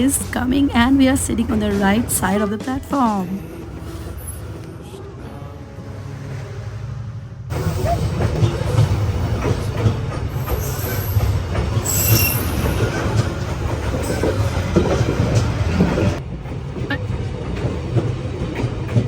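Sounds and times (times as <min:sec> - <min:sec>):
train wheels rumbling on track: 0:00.0 - 0:05.1, 0:06.0 - 0:19.0
high-pitched wheel squeals: 0:07.5 - 0:14.6.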